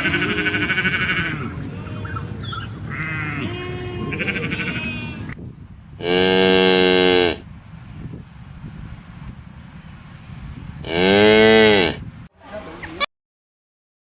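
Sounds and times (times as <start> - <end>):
livestock bleating: 0.0 - 5.4.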